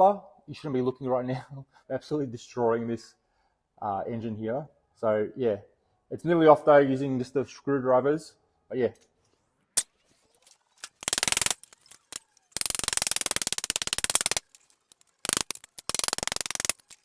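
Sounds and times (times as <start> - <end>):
hand tools clicking and scraping: 9.8 - 17.0.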